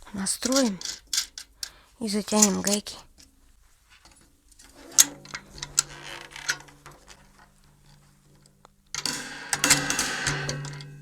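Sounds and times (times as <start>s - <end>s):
metal drum hardware clicking: 4.6s - 11.0s.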